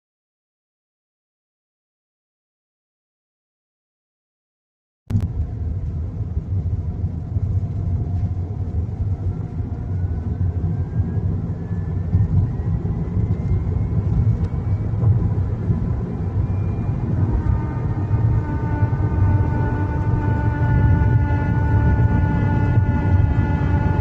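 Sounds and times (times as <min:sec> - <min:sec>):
car low rumble: 0:05.1 - 0:24.0
faint rising whine: 0:05.1 - 0:24.0.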